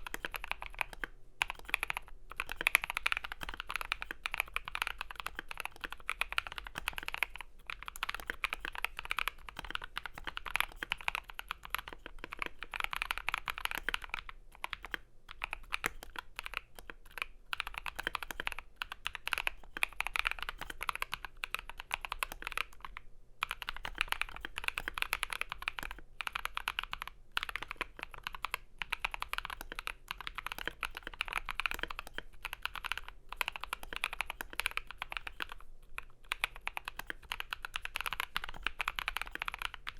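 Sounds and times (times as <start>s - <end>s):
fast mechanical keyboard typing: 0.0s - 39.9s.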